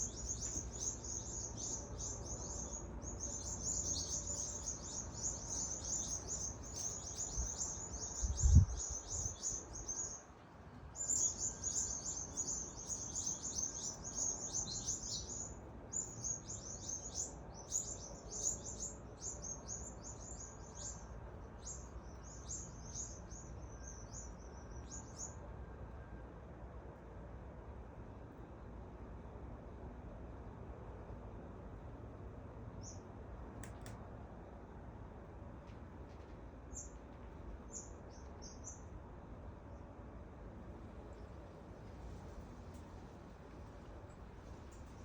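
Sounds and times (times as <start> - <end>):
small birds chirping: 0.0 - 10.3, 11.0 - 25.4, 36.7 - 37.0, 37.6 - 38.9.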